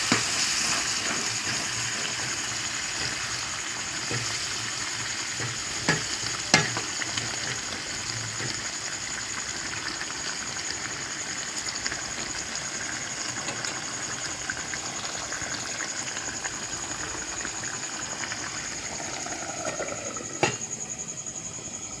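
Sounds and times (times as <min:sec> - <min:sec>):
curry sizzling in a pan: 0:00.0 - 0:21.4
spoon knocking a pan: 0:05.3 - 0:08.6, 0:20.4 - 0:20.7.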